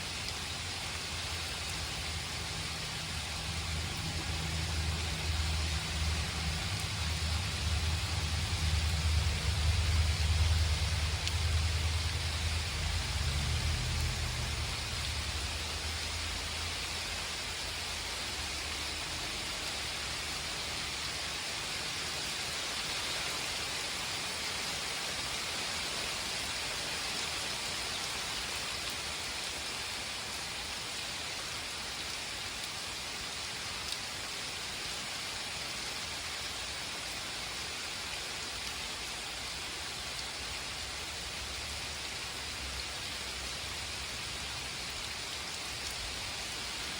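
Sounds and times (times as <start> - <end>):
rain splashing on surfaces: 0.0 - 46.9
low thunder rumble: 1.4 - 17.2.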